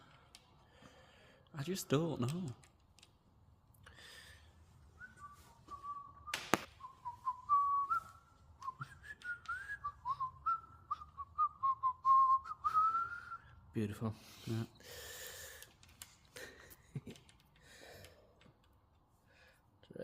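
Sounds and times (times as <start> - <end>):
person whistling: 5.0 - 13.6.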